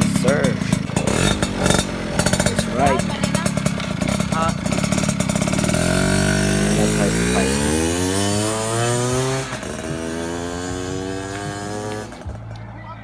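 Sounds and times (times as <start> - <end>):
moped engine revving: 0.0 - 13.0.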